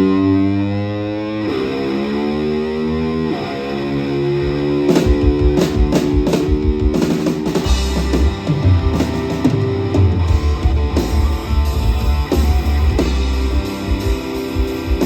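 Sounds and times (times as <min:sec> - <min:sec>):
electric guitar riff: 0:00.0 - 0:15.0
drum hits: 0:04.9 - 0:15.0
deep bass line: 0:07.7 - 0:15.0.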